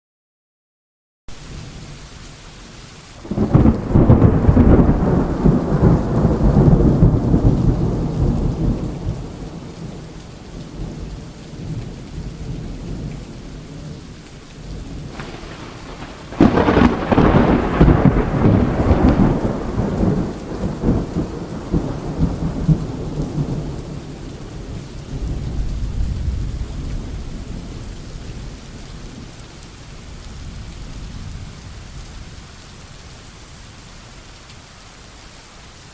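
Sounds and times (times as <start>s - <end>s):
steady rain: 1.3s - 35.9s
thunder rolling: 3.2s - 10.0s, 15.0s - 27.6s.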